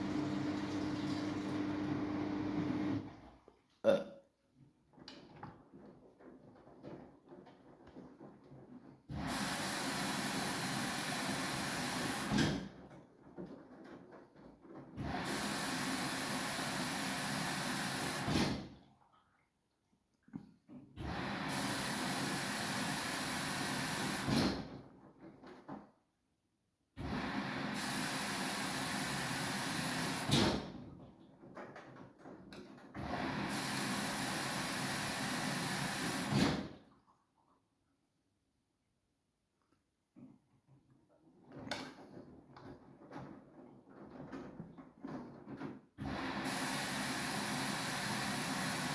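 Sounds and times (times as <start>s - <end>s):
washing machine drum tumbling laundry: 0.0s - 3.2s.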